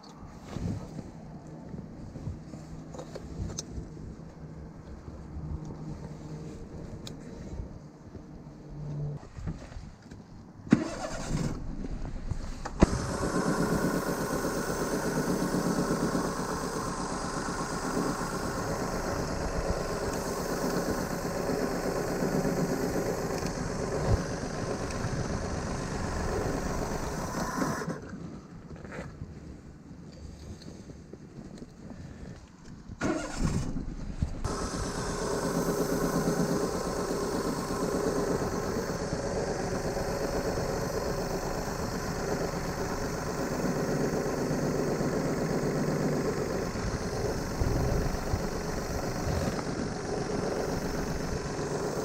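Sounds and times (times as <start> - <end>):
car engine idling: 10.7 - 28.0, 33.0 - 52.0.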